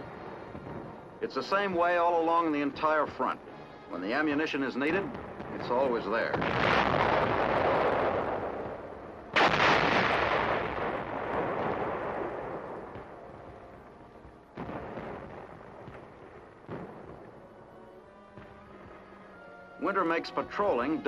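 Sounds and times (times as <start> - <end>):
artillery gun firing: 5.2 - 13.6.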